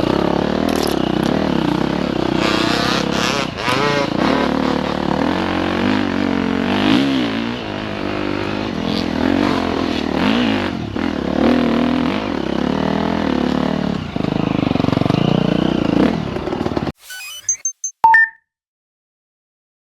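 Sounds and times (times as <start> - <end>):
dirt bike engine revving: 0.0 - 16.7
clatter and trail noise: 0.5 - 1.8
short electronic beeps: 17.0 - 18.4.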